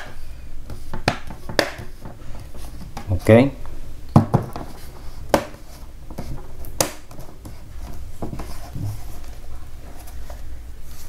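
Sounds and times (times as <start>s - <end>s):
plastic rubbing and handling: 4.3s - 11.0s.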